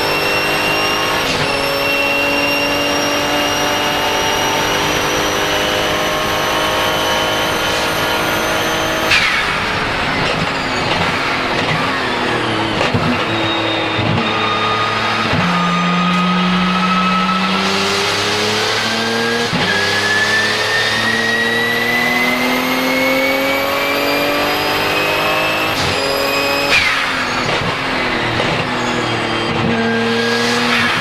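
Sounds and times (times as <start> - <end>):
turbo whistle: 0.0 - 3.6, 12.0 - 31.0
race car engine accelerating: 0.0 - 31.0.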